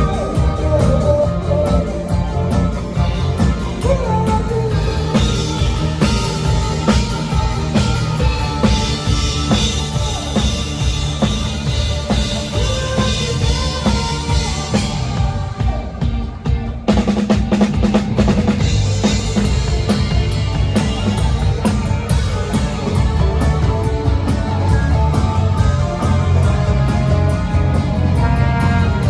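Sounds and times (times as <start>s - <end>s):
bass: 0.0s - 29.0s
drum kit: 0.0s - 29.0s
bending lead melody: 17.8s - 29.0s.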